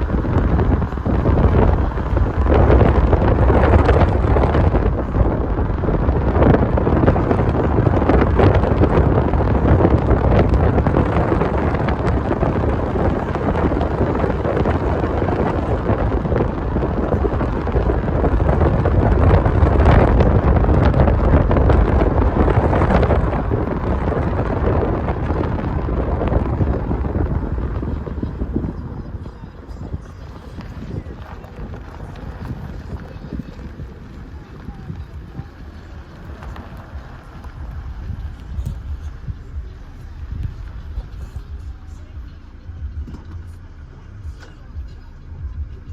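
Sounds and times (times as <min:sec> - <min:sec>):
car road noise: 0:00.0 - 0:45.9
wind buffeting microphone: 0:00.0 - 0:45.9.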